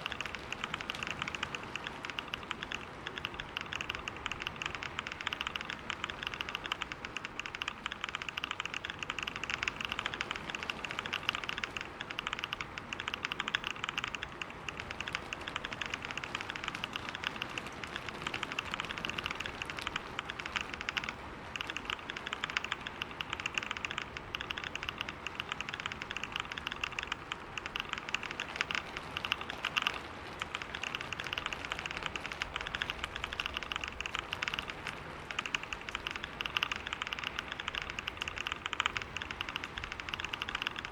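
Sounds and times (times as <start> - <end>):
fast typing on keyboard: 0.0 - 40.9.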